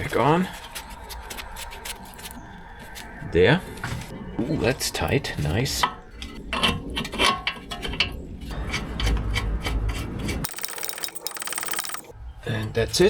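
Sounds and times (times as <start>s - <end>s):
fast fine ratchet clicks: 10.5s - 12.1s
metallic clinks of wrenches: 10.5s - 12.1s.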